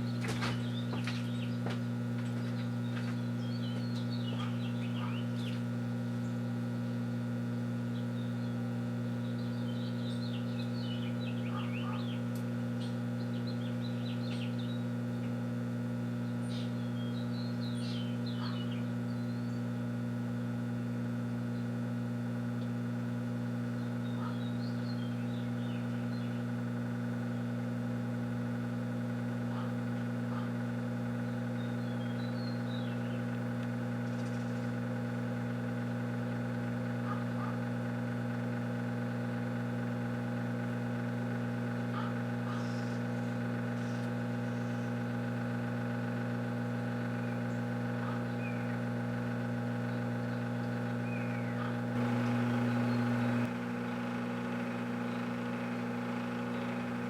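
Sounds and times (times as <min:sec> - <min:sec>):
microwave oven humming: 0:00.0 - 0:57.0.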